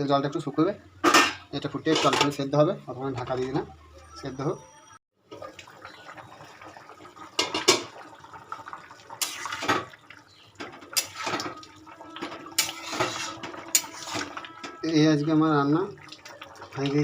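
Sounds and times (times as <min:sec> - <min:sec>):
liquid splashing and bubbling: 0:05.2 - 0:17.0.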